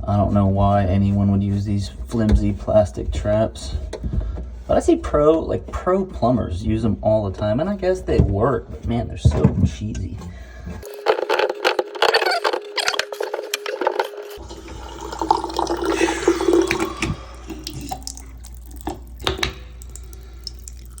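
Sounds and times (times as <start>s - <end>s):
faucet water running into sink: 14.4s - 21.0s.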